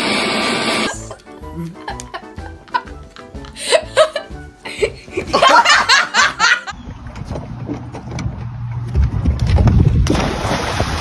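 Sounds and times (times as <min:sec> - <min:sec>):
person laughing: 0:00.8 - 0:06.7.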